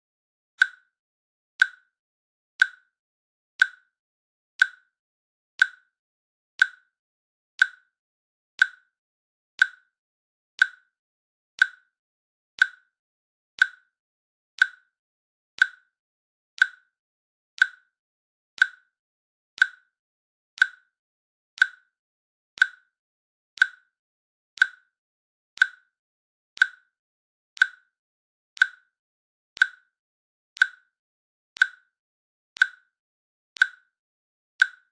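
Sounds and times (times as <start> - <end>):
timer clicking: 0.6 - 1.0, 1.6 - 2.0, 2.6 - 3.0, 3.6 - 4.0, 4.6 - 5.0, 5.6 - 6.0, 6.6 - 7.0, 7.6 - 8.0, 8.6 - 9.0, 9.6 - 10.0, 10.6 - 11.0, 11.6 - 12.0, 12.6 - 13.0, 13.6 - 14.0, 14.6 - 15.0, 15.6 - 16.0, 16.6 - 17.0, 17.6 - 18.0, 18.6 - 19.0, 19.6 - 20.0, 20.6 - 21.0, 21.6 - 22.0, 22.6 - 23.0, 23.6 - 24.0, 24.6 - 25.0, 25.6 - 26.0, 26.6 - 27.0, 27.6 - 28.0, 28.6 - 29.0, 29.6 - 30.0, 30.6 - 31.0, 31.6 - 32.0, 32.6 - 33.0, 33.6 - 34.0, 34.6 - 34.9.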